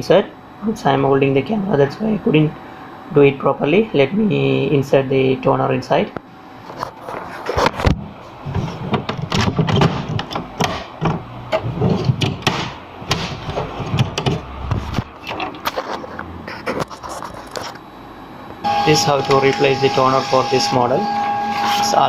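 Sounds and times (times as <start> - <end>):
plastic knocks and clicks: 8.9 - 15.6.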